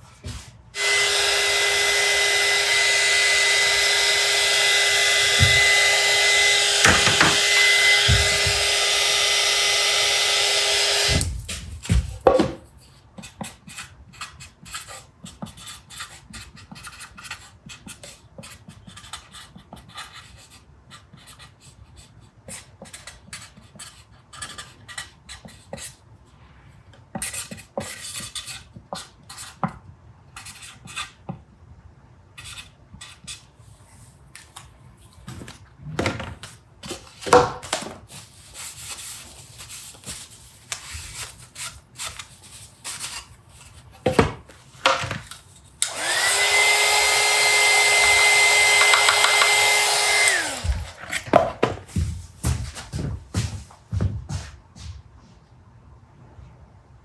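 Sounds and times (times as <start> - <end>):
tools and wood handled on bench: 3.8 - 9.0, 34.4 - 53.1
loud knocks: 6.8 - 8.7.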